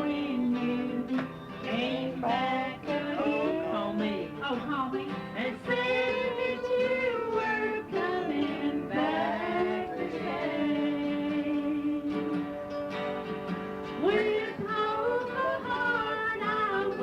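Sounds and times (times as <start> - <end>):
country song on cassette: 0.0 - 12.5, 13.9 - 17.0.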